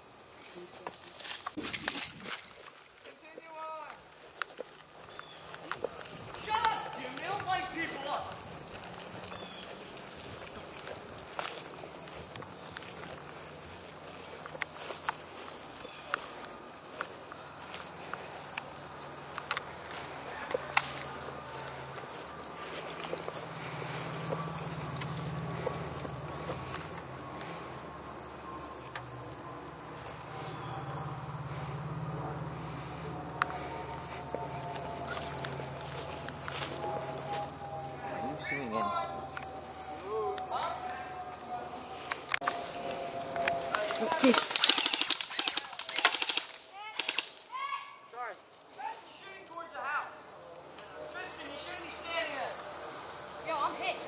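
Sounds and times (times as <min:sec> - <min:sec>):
crickets shrilling: 0:00.0 - 0:54.0
low hum: 0:23.6 - 0:44.7
sharp clicks: 0:44.2 - 0:47.4.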